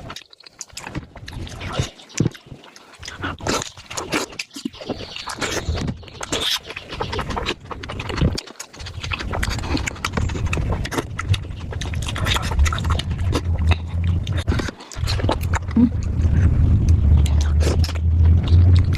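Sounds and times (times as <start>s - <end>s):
wet chewing and slurping: 0.0s - 18.9s
low hum: 9.3s - 18.9s.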